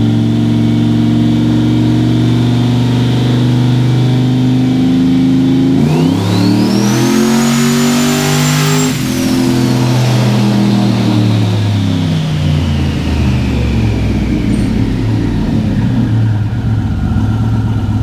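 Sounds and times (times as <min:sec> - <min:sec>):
car engine accelerating: 0:00.0 - 0:18.0
turbo whine: 0:05.5 - 0:18.0.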